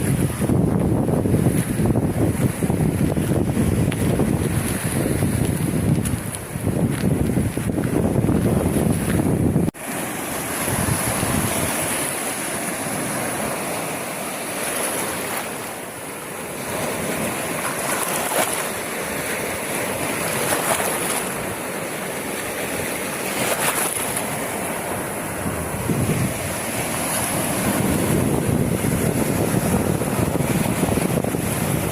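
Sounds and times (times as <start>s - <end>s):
wind rumble on microphone: 0.0s - 9.8s, 10.4s - 12.3s, 22.8s - 31.9s
sea waves washing ashore: 0.0s - 31.9s.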